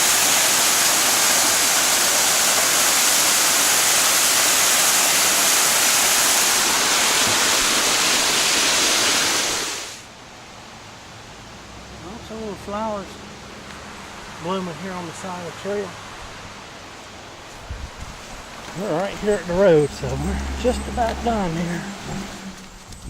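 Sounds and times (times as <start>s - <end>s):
waterfall rushing: 0.0s - 10.1s.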